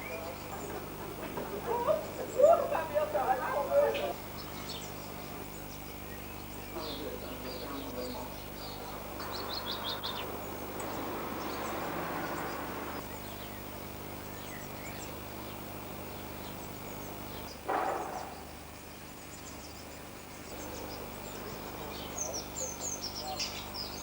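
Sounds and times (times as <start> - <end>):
songbirds chirping: 0.0 - 24.0
rushing noise: 8.4 - 13.0
loud whoosh: 8.8 - 13.0.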